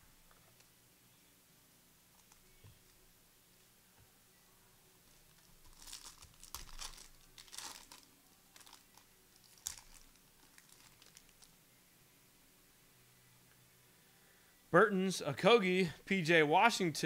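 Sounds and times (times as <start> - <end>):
wrapper crinkling and tearing: 5.3 - 11.5.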